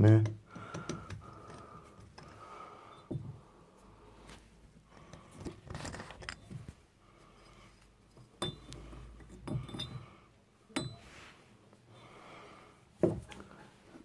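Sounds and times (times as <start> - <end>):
metal parts clinking and knocking: 0.0 - 2.4, 4.9 - 6.8, 8.2 - 10.1.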